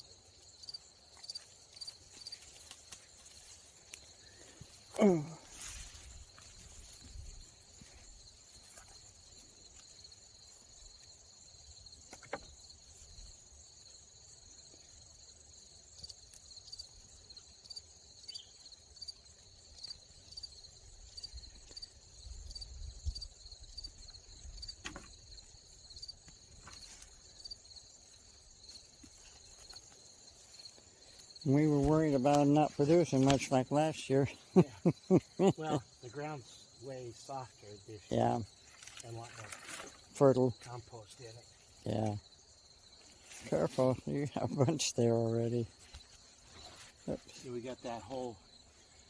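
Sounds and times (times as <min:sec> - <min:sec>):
insects chirring: 0:00.0 - 0:49.0.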